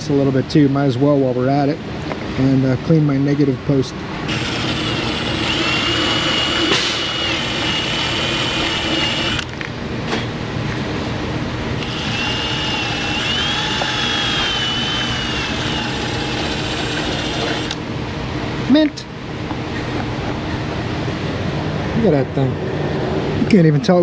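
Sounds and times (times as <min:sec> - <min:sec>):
power tool wire brush whine: 0:04.3 - 0:09.5, 0:11.8 - 0:17.8.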